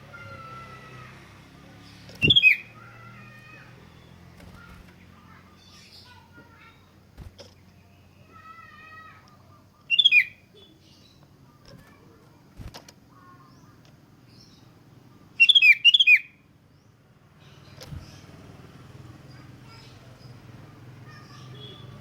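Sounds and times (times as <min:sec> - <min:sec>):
bird warbling: 0:02.0 - 0:06.9, 0:08.1 - 0:11.6, 0:15.3 - 0:16.4.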